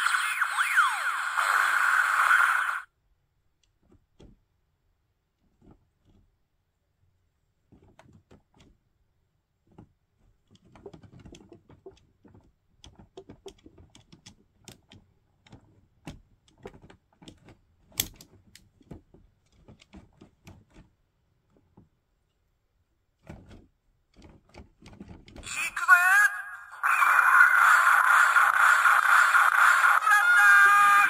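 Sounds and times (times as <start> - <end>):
plastic toy parts clicking: 10.5 - 20.9.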